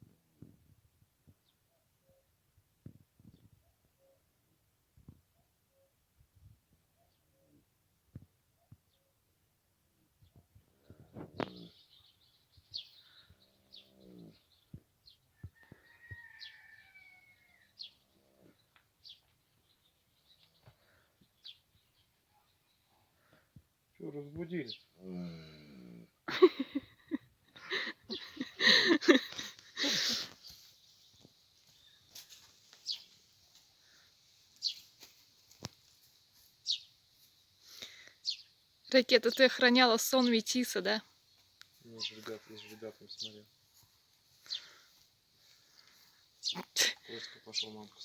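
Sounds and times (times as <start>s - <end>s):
small birds chirping: 1.0s - 48.0s
colt snoring: 13.4s - 14.5s, 25.0s - 26.2s.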